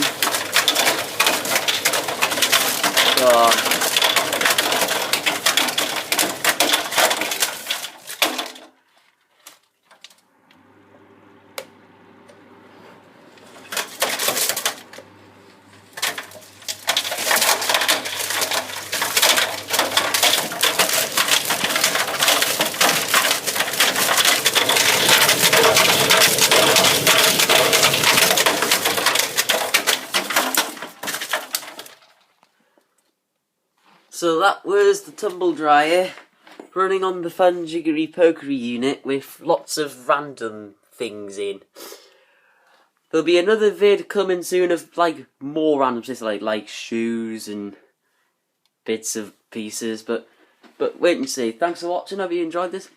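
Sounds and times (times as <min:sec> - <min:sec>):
low dryer hum: 0:00.0 - 0:08.0, 0:10.2 - 0:31.8
objects clattering in tumble dryer drum: 0:00.0 - 0:32.4.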